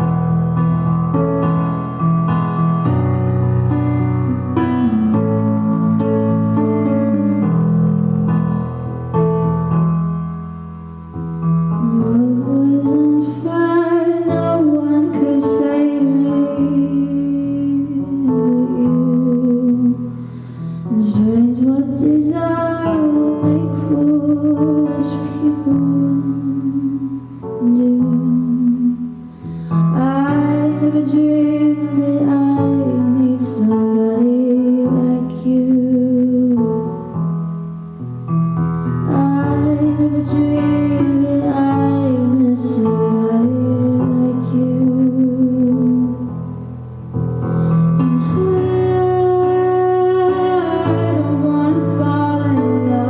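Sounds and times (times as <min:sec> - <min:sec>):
piano chords: 0:00.0 - 0:53.0
woman singing a slow ballad: 0:04.3 - 0:07.6, 0:11.7 - 0:37.1, 0:39.0 - 0:46.5, 0:47.9 - 0:53.0.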